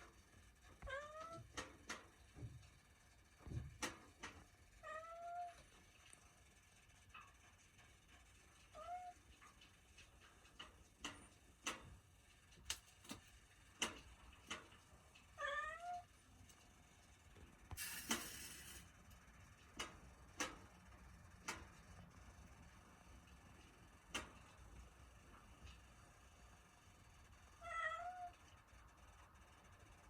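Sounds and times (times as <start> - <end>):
cat meowing: 15.4 - 16.1, 27.6 - 28.4.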